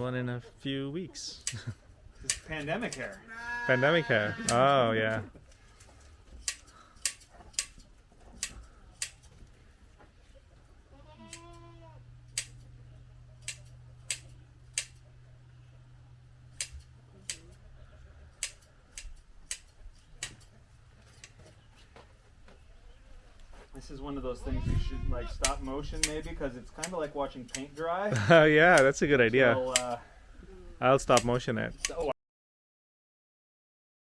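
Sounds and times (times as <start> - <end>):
shears snipping: 1.4 - 3.2, 3.9 - 4.8, 5.5 - 9.5, 11.2 - 15.2, 16.4 - 17.6, 18.2 - 21.9, 25.4 - 30.0, 31.0 - 32.1
sheep bleating: 3.2 - 4.9, 10.9 - 12.0, 24.4 - 25.5
low steady hum: 8.0 - 27.2.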